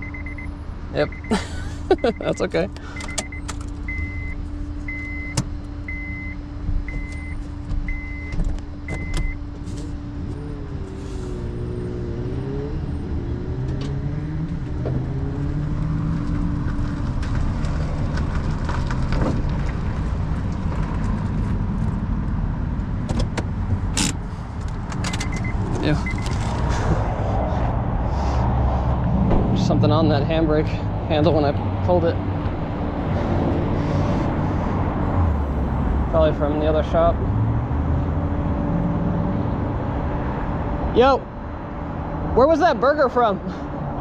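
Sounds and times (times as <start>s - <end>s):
truck backup alarm beeping: 0.0s - 9.5s, 25.1s - 26.4s
truck engine revving: 31.4s - 40.1s.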